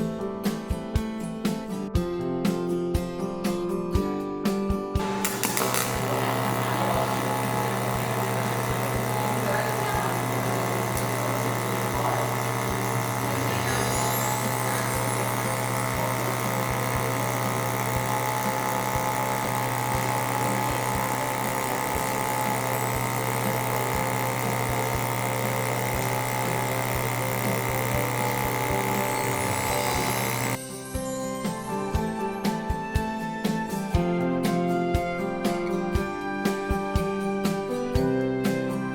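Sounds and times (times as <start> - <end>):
welding arc buzzing and crackling: 5.0 - 30.6.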